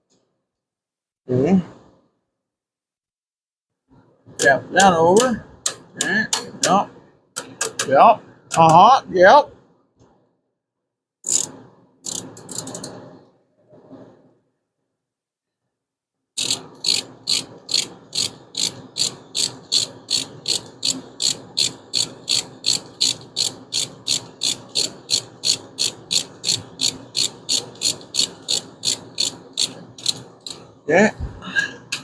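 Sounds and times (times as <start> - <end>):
ratchet wrench clicking: 7.4 - 7.9, 11.2 - 12.9, 16.4 - 30.6.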